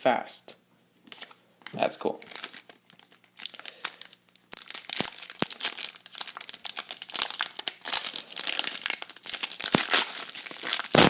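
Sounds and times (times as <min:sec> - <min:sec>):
foil wrapper crinkling: 0:02.2 - 0:11.0.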